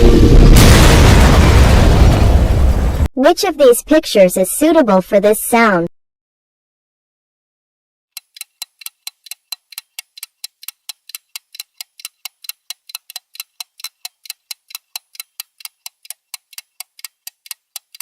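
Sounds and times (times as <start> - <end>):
clock-like ticking: 8.2 - 18.0.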